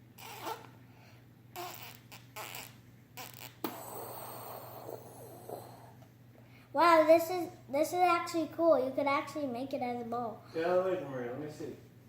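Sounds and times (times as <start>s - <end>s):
breath blown through tube: 0.2s - 0.7s, 1.6s - 6.0s.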